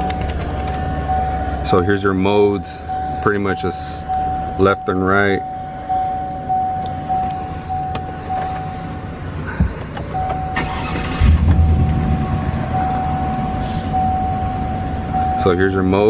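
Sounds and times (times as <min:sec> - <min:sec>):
truck engine idling: 0:05.4 - 0:15.4.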